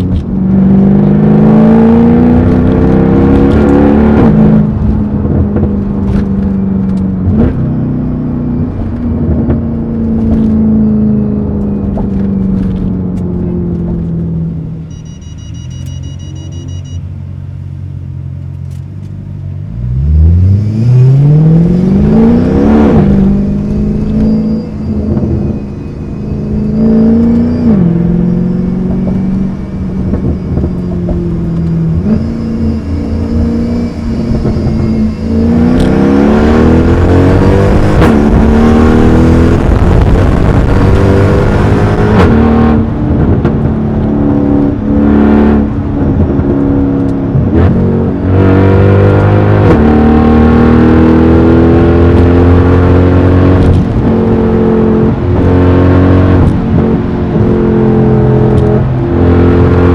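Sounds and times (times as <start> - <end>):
car engine revving loudly: 0.0 - 6.4, 19.7 - 59.9.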